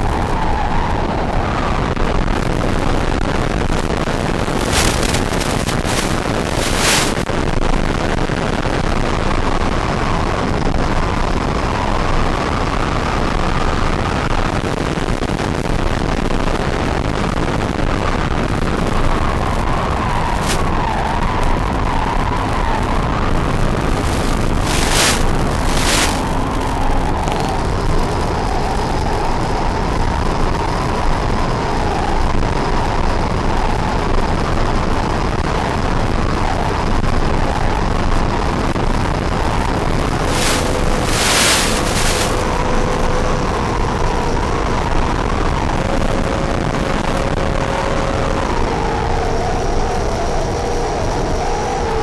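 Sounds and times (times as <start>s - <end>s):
wind noise rushing: 0.0s - 16.4s, 17.0s - 30.7s, 38.4s - 46.6s.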